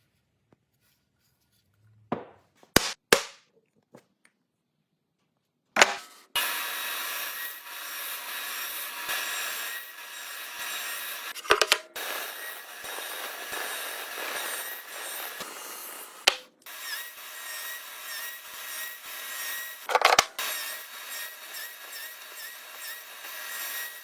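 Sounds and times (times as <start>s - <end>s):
power tool rasping wood: 6.4s - 24.0s.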